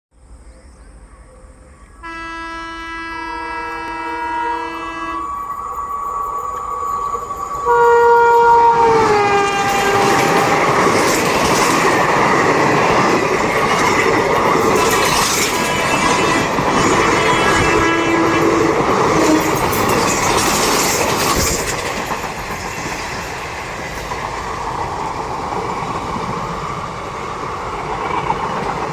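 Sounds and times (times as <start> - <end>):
passing train rushing: 0.9 - 28.9
locomotive horn: 2.0 - 5.6, 7.6 - 11.0, 17.1 - 19.7
wheels clacking over rail joints: 6.9 - 28.9.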